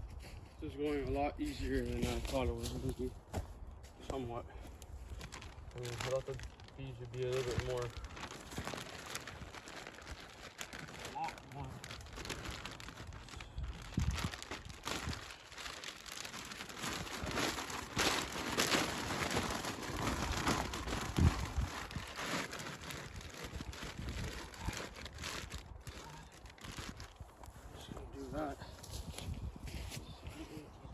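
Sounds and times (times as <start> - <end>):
rustling and crinkling handling: 0.0 - 30.9.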